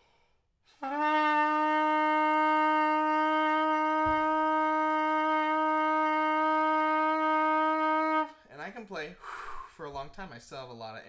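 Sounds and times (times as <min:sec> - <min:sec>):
trumpet mouthpiece long note: 0:00.7 - 0:08.4.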